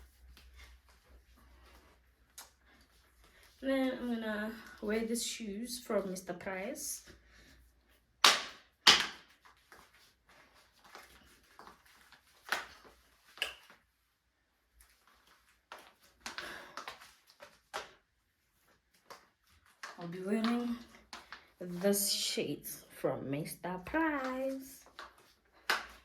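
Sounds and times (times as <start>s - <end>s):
soft rustling: 0.0s - 8.1s
shoes knocking and clacking: 8.2s - 9.9s.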